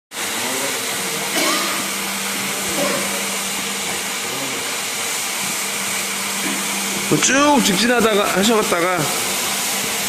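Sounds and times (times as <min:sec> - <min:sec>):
floor scrubber vacuum motor: 0:00.2 - 0:10.0
constant machine hum: 0:00.3 - 0:05.7.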